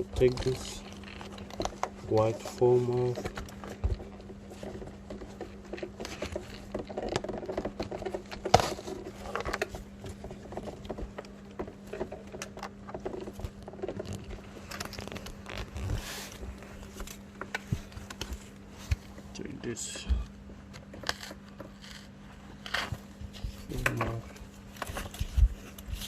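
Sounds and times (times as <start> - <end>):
steady low hum: 0.0 - 26.0
foam padding peeled off plastic: 13.3 - 17.2.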